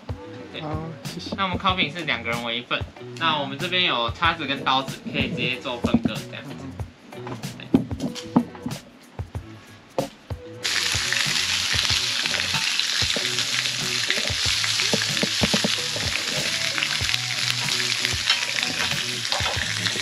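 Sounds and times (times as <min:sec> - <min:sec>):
food sizzling on a grill: 0:10.6 - 0:20.0.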